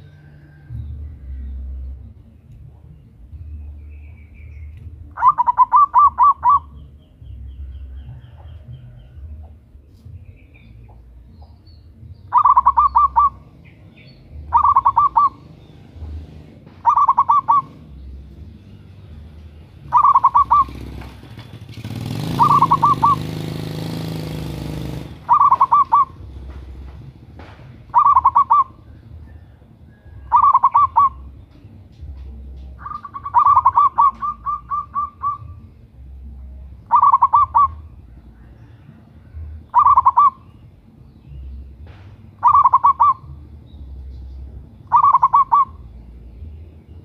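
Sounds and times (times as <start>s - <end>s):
passing engine hum: 0.0s - 47.0s
dove cooing: 5.1s - 6.8s, 12.3s - 13.5s, 14.4s - 15.5s, 16.8s - 18.0s, 19.8s - 21.3s, 21.9s - 26.4s, 27.9s - 28.8s, 30.0s - 31.4s, 32.8s - 35.7s, 36.8s - 40.5s, 42.4s - 43.3s, 44.8s - 45.8s.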